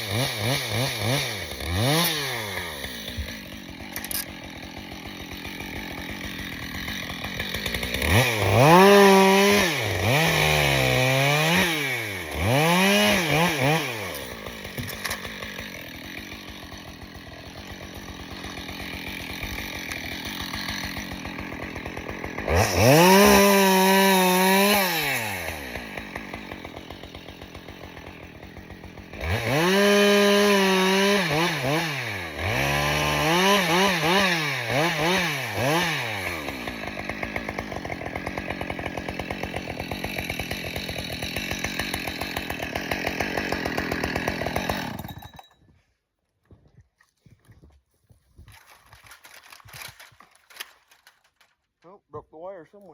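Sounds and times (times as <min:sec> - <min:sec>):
chainsaw revving: 0:00.0 - 0:45.6.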